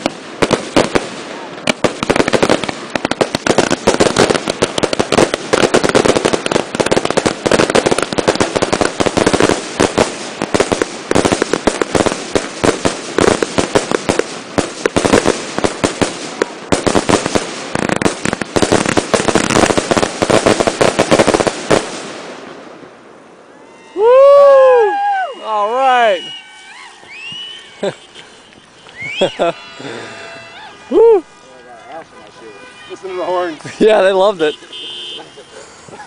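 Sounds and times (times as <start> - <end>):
fireworks explosions and crackling: 0.0 - 36.0.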